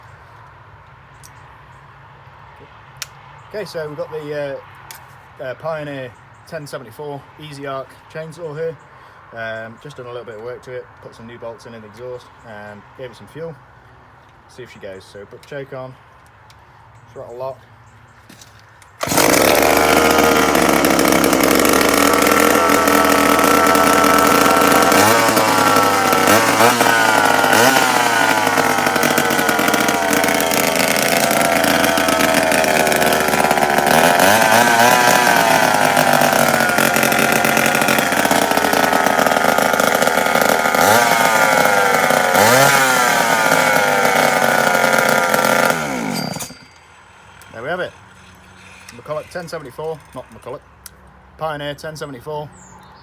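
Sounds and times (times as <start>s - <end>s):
chainsaw starting and revving: 18.4s - 50.9s.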